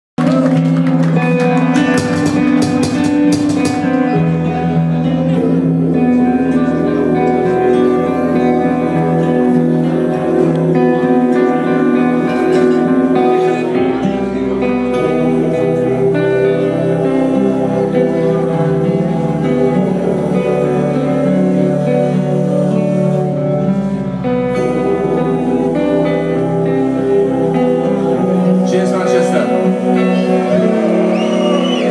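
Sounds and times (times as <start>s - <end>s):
drums: 0.2s - 22.3s
band playing loud live music: 0.2s - 31.9s
guitars holding sustained chords: 0.2s - 31.9s.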